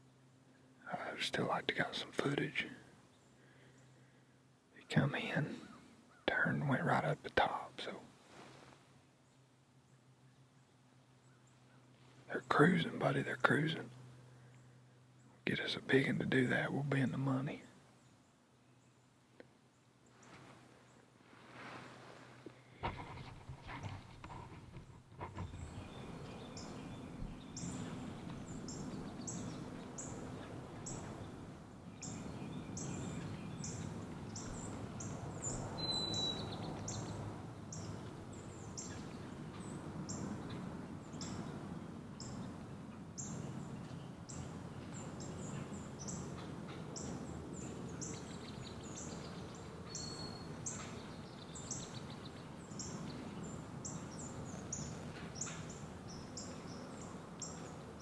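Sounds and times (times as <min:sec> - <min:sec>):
small bird chirping: 0:25.2 - 0:41.5, 0:43.2 - 0:57.8
whistled bird notes: 0:35.5 - 0:37.1.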